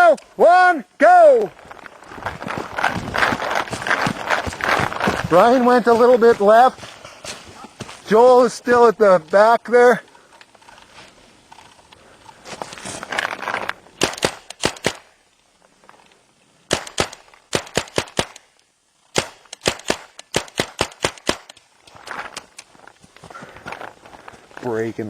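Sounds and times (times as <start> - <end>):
rustle of movement: 1.4 - 14.0, 15.0 - 17.5, 21.5 - 25.0
paintball marker firing: 14.0 - 15.1, 16.7 - 18.5, 19.1 - 21.6.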